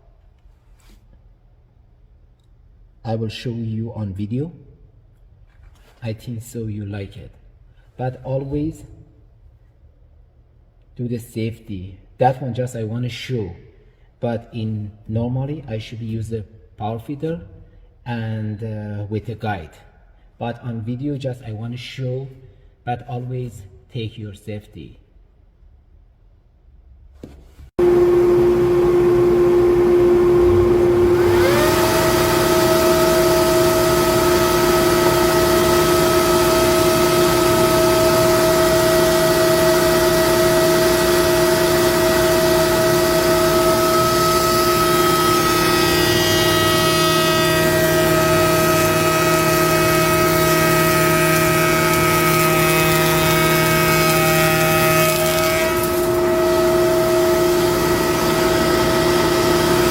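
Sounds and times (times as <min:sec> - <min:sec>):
cutter working wood: 0:27.8 - 0:59.9
motor coming up to speed: 0:27.8 - 0:59.9
wood shaper whine: 0:27.8 - 0:59.9.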